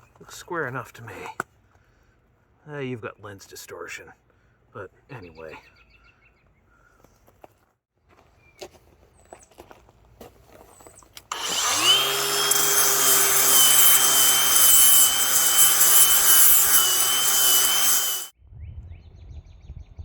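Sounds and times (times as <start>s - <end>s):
power tool motor whine: 11.3s - 18.3s.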